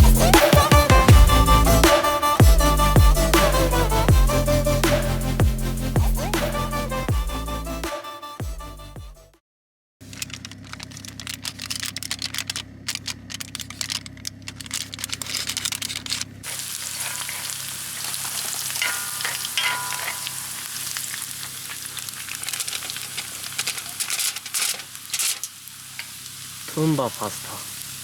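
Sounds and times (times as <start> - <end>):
food sizzling in a pan: 16.5 - 28.0.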